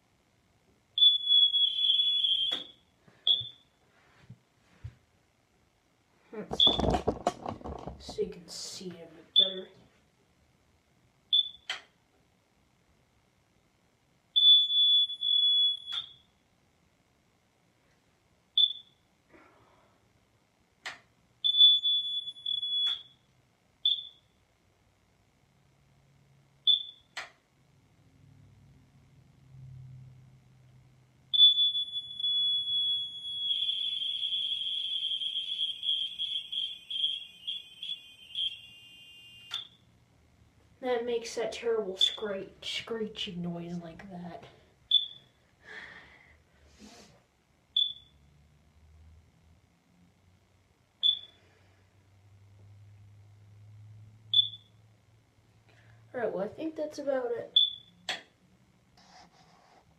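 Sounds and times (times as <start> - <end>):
smoke alarm beeping: 1.0 - 3.7, 6.6 - 6.9, 9.4 - 9.7, 11.3 - 11.9, 14.4 - 16.4, 18.6 - 19.0, 21.4 - 23.2, 23.8 - 24.4, 26.6 - 27.3, 31.3 - 39.9, 44.9 - 45.4, 47.7 - 48.2, 51.0 - 51.4, 54.3 - 54.8, 57.5 - 58.2.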